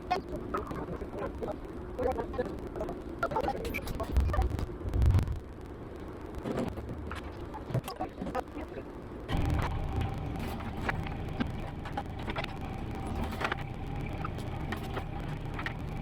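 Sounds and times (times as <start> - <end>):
engine running steadily: 9.2 - 16.0.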